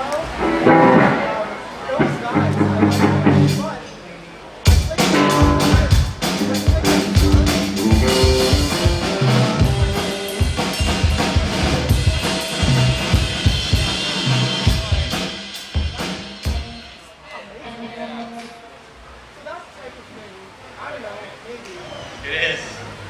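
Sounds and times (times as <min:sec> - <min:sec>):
live band playing: 0:00.3 - 0:03.8, 0:04.7 - 0:17.0.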